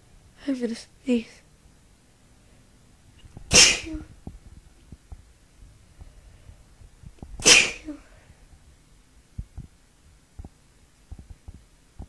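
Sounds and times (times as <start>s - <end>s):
woman sneezing: 3.5s - 4.1s, 7.4s - 8.0s.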